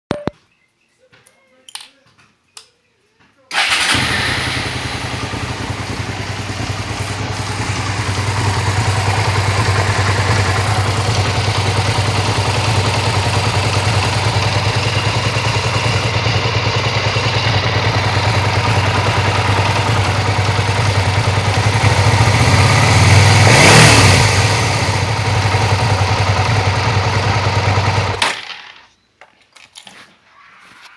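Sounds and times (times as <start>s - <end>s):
motorcycle engine running: 3.5s - 28.2s
rapid engine ticking: 3.5s - 28.2s.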